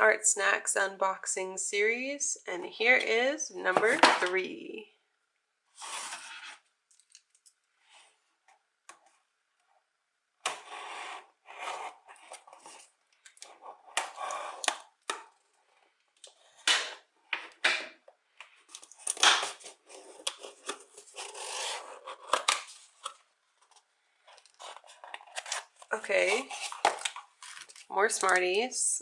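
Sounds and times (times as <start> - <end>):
paper and wrapping rustling: 18.6 - 28.6.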